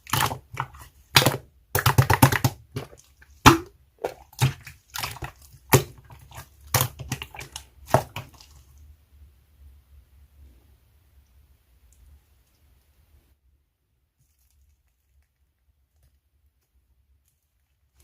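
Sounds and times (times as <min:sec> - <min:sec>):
hands squishing slime: 0:00.0 - 0:08.9, 0:14.2 - 0:18.0.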